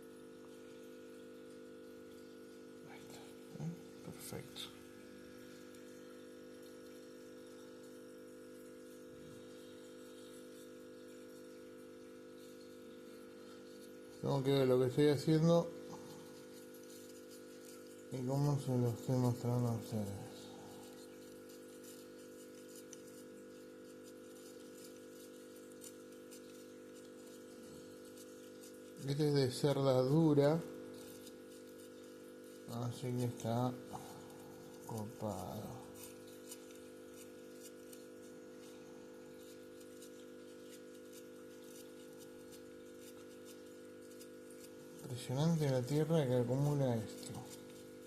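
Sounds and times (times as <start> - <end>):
low electrical hum: 0.0 - 48.0
brush scratching: 12.2 - 48.0.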